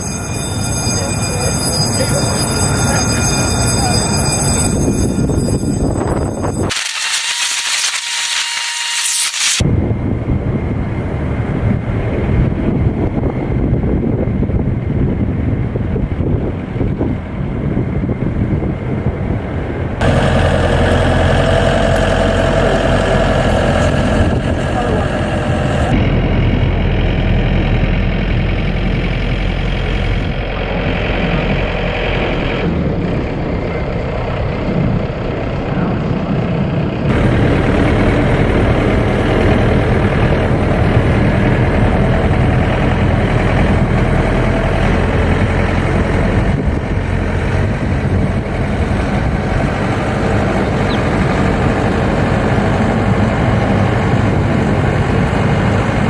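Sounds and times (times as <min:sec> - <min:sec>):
machinery humming: 0:00.0 - 0:16.0, 0:17.3 - 0:56.0.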